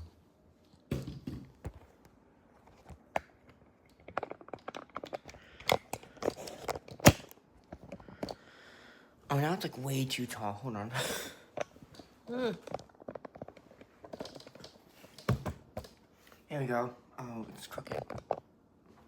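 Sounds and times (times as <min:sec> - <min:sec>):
handling clicks and rustles: 0:01.5 - 0:08.4, 0:11.5 - 0:16.5.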